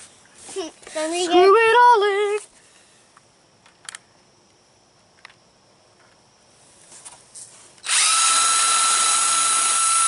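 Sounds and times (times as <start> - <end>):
cordless drill driving screw: 7.8 - 10.0.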